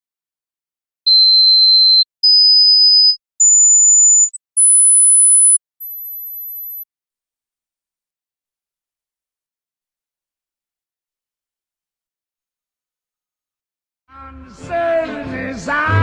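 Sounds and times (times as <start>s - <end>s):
high-pitched test beeps: 1.1s - 6.8s.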